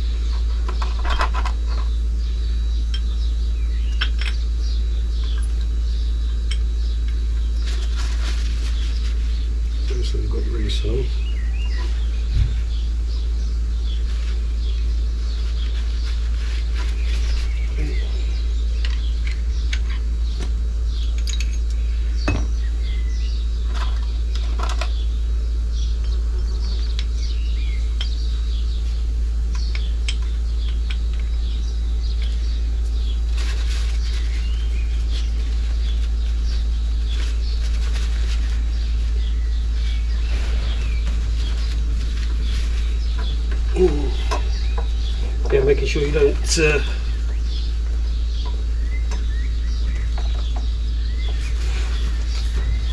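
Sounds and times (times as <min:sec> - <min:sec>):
small birds chirping: 0:00.0 - 0:52.9
steady low rumble: 0:00.0 - 0:52.9
metal parts clinking: 0:21.2 - 0:21.7.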